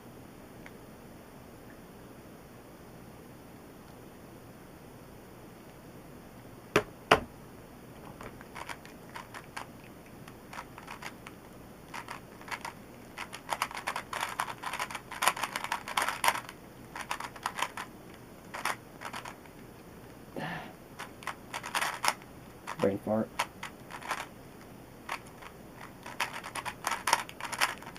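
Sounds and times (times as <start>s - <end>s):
puzzle cube plastic clicks: 8.1s - 19.6s, 21.0s - 22.8s, 23.4s - 24.3s, 25.0s - 27.9s.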